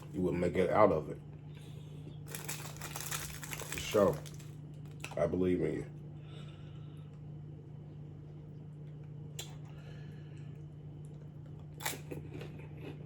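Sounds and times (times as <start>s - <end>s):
steady low hum: 0.0s - 13.0s
man eating: 8.2s - 13.0s
wet crunchy bite: 11.6s - 13.0s.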